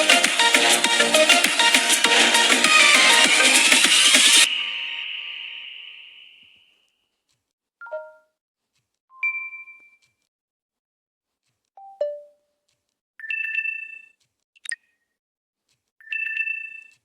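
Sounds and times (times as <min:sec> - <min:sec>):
phone notification chimes: 0:07.8 - 0:08.3.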